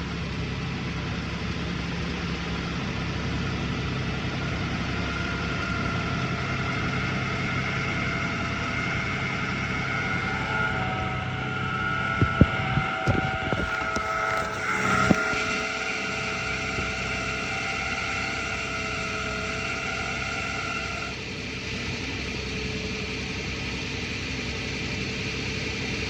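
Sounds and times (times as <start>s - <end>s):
car engine idling: 0.0s - 26.0s
high-pitched squeal: 4.0s - 21.4s.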